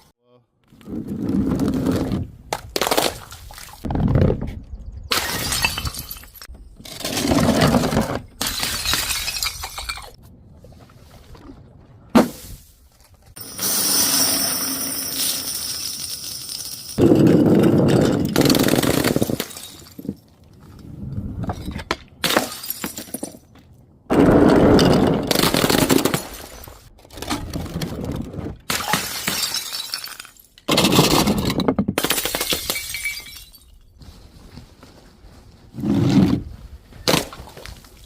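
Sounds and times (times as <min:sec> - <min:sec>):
glass bottles smashing: 0:05.1 - 0:07.2, 0:08.4 - 0:10.2, 0:13.4 - 0:20.3, 0:21.6 - 0:23.5, 0:28.7 - 0:33.9.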